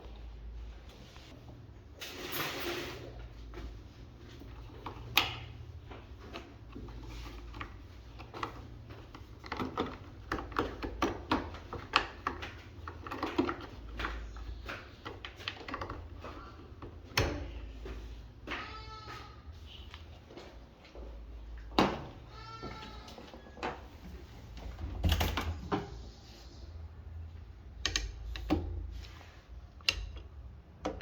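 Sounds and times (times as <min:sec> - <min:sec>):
hard objects clicking and knocking: 0:07.4 - 0:17.4.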